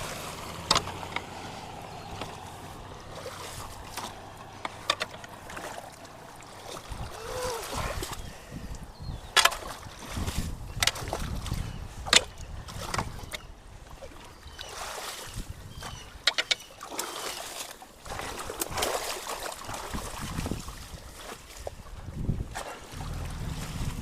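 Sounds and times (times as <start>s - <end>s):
running water with low rumble: 0.0s - 24.0s
water splashing and sloshing: 0.0s - 24.0s.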